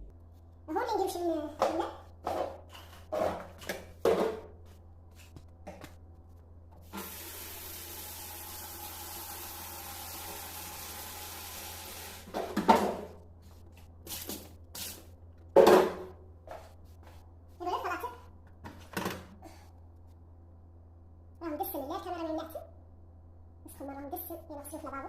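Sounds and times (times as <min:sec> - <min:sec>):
low steady hum: 0:00.0 - 0:06.9, 0:12.3 - 0:25.0
tap water running into sink: 0:07.0 - 0:12.3.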